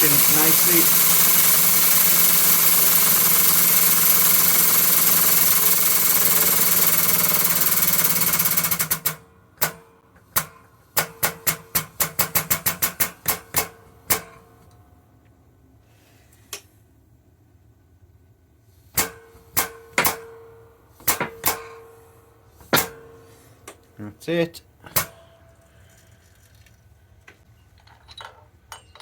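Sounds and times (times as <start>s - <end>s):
air press hissing hum: 0.0s - 9.8s.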